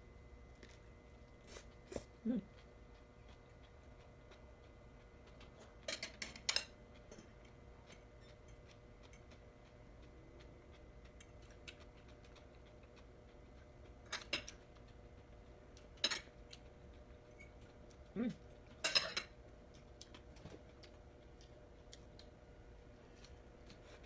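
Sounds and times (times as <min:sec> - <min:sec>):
utensils clinking against dish: 0:18.8 - 0:19.3.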